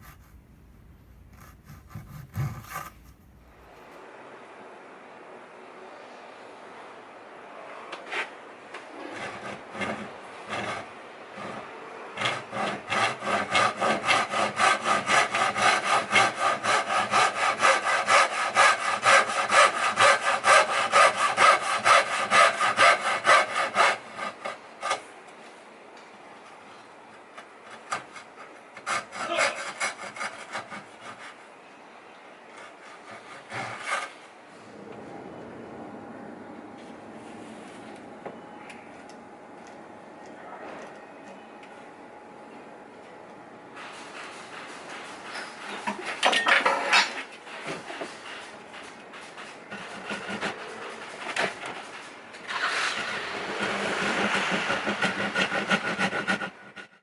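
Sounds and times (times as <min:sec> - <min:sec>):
hand tool working wood: 0:00.0 - 0:03.9, 0:27.7 - 0:31.4, 0:47.0 - 0:57.0
steady rasping: 0:00.0 - 0:03.9, 0:53.5 - 0:57.0.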